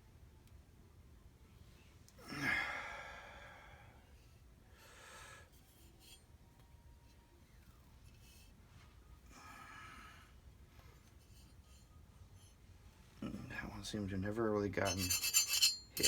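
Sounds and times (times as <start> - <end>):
low room noise: 0.0 - 16.0
man sighing: 2.2 - 3.4.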